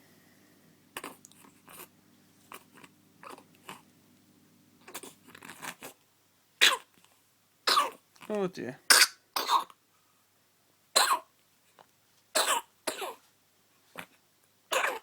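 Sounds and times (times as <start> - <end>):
baby sneezing or coughing: 6.6 - 6.9, 7.7 - 8.0, 8.9 - 9.8, 11.0 - 11.3, 12.4 - 13.2, 14.7 - 15.0.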